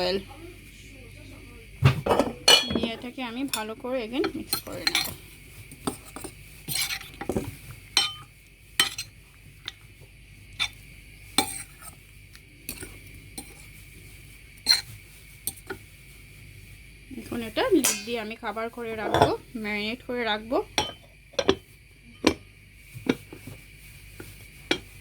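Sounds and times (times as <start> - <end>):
utensil clinking against bowl: 2.1 - 5.2, 17.8 - 18.4, 20.8 - 21.6, 24.7 - 25.0
soft scraping in bowl: 4.6 - 8.0, 12.7 - 16.8.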